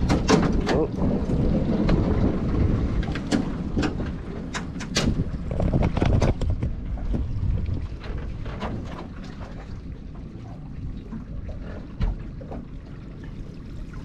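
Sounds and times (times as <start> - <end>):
water splashing and dripping: 0.0 - 14.0
wind rumble on microphone: 0.0 - 14.0.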